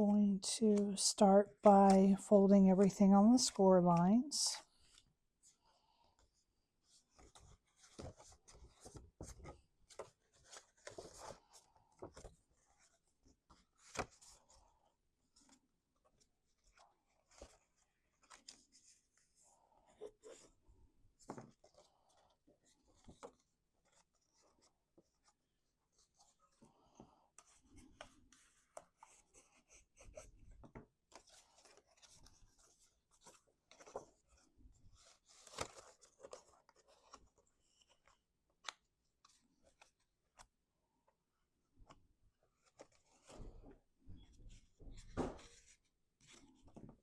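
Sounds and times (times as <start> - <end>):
cardstock rustling and folding: 6.3 - 40.6, 41.8 - 47.0.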